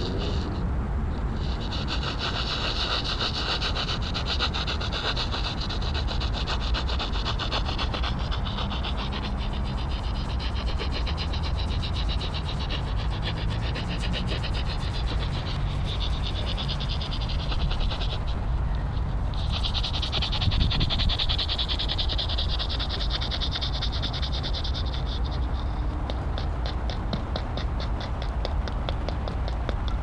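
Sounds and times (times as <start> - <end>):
steady low rumble: 0.0 - 4.8, 5.5 - 30.0
insects trilling: 7.6 - 18.4, 19.4 - 30.0.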